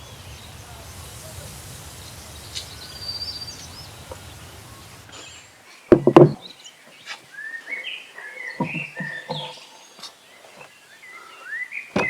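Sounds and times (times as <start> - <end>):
low outdoor rumble: 0.0 - 5.5
bird chirping: 0.0 - 9.9.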